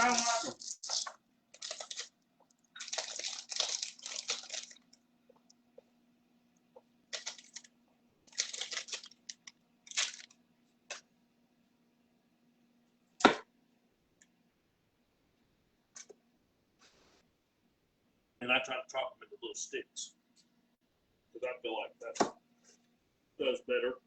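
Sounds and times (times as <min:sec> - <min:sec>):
faint steady hum: 0:00.0 - 0:24.0
carrots crunching: 0:02.7 - 0:04.9, 0:08.3 - 0:10.4.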